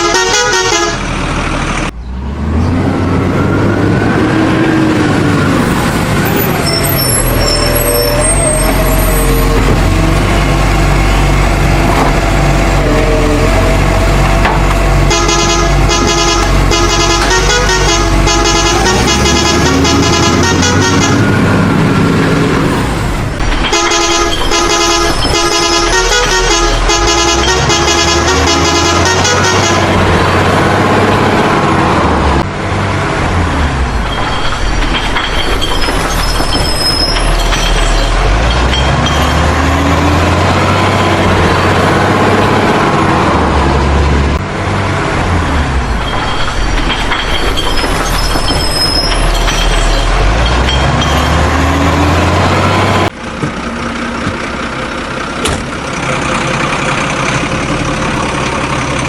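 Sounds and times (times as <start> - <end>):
vehicle horns honking: 0.0 - 1.1, 14.6 - 21.7, 23.5 - 31.1
vehicle engine and traffic noise: 0.0 - 59.0.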